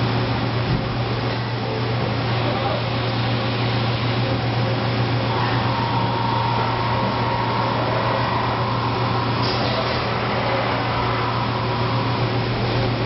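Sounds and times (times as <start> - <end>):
machine low hum: 0.0 - 13.0
faint whine: 4.0 - 13.0
even rushing noise: 5.2 - 13.0.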